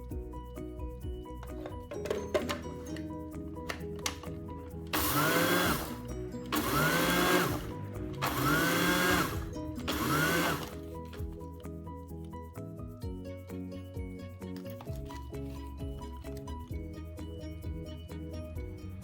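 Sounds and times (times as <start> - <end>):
electric blender motor whirring: 4.9 - 10.9.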